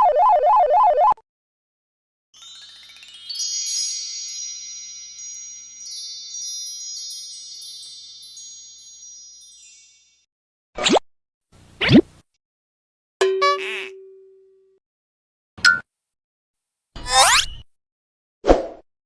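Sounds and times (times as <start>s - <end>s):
wind chime sparkle: 2.4s - 10.3s.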